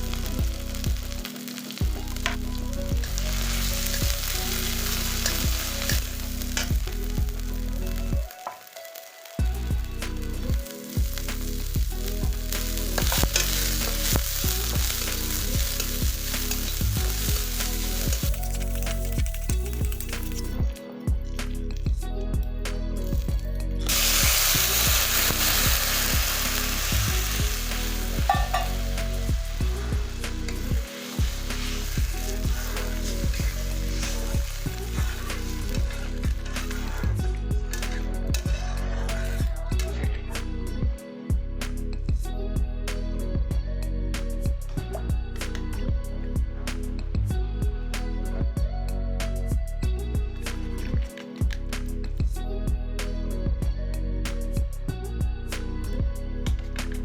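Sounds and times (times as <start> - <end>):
music with deep repeating beat: 0.0 - 8.3, 9.4 - 57.0
vegetables frying in hot oil: 0.0 - 9.9, 10.5 - 20.4, 23.9 - 37.2.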